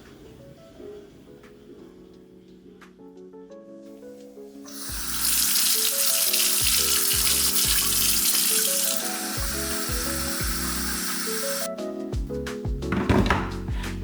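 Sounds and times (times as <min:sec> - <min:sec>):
tap water running into sink: 0:04.7 - 0:11.7.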